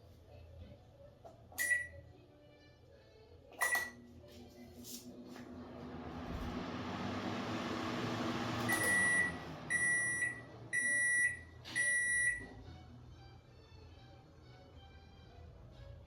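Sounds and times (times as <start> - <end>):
microwave oven hum: 5.1 - 12.8.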